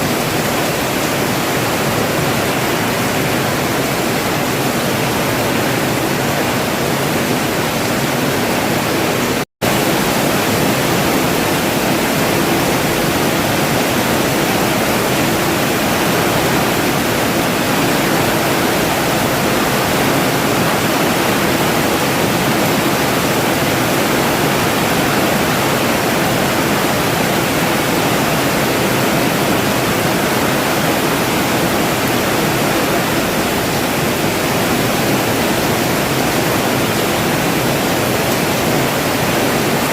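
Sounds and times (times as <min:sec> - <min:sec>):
steady rain hiss: 0:09.7 - 0:39.9.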